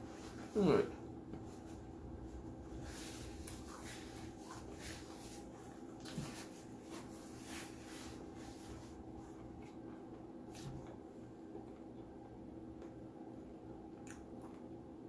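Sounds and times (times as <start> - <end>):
steady low hum: 0.0 - 15.0
faint rustles and scrapes: 1.4 - 11.0.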